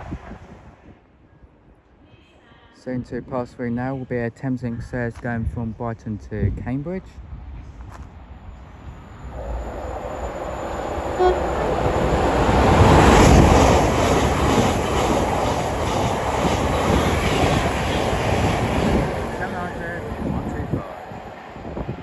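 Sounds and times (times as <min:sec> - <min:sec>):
train wheels rushing on rail: 0:08.4 - 0:22.0
short tone: 0:08.9 - 0:12.0
clatter over rail joints: 0:09.8 - 0:21.2.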